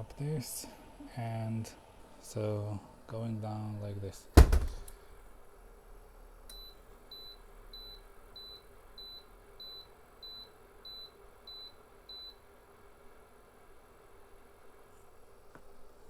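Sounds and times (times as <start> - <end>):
faint steady hum: 0.0 - 16.0
heater alarm beeping: 6.5 - 12.4.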